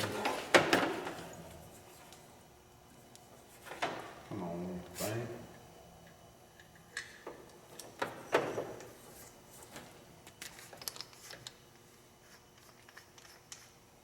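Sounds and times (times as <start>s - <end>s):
small parts clicking and tapping: 10.4s - 11.6s.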